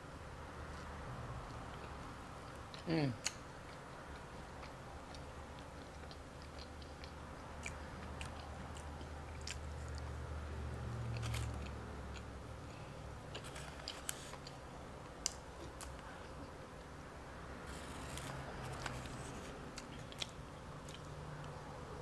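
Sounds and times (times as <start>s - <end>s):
person chewing: 1.5s - 10.1s, 11.1s - 14.6s, 17.7s - 21.6s.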